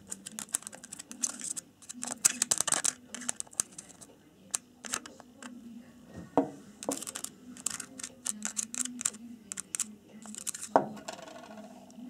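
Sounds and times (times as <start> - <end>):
hard objects clicking and scraping: 0.0 - 5.5, 6.8 - 11.9.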